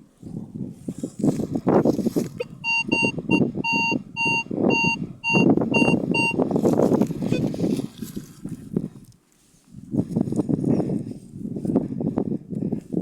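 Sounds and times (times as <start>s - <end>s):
rustling and scraping: 0.8s - 2.4s, 6.5s - 11.8s
metal detector beeps: 2.4s - 6.4s, 7.3s - 7.5s.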